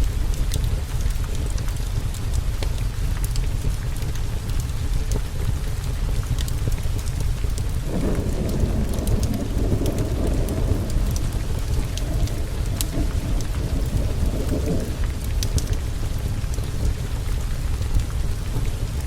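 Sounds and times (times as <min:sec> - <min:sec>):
heavy rain: 0:00.0 - 0:19.0
sharp ticks: 0:06.3 - 0:16.9
rolling thunder: 0:07.6 - 0:18.4.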